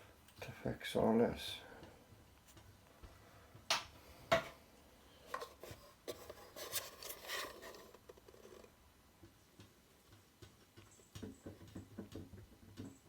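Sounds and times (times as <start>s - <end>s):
rubbing and scraping: 5.3s - 8.7s.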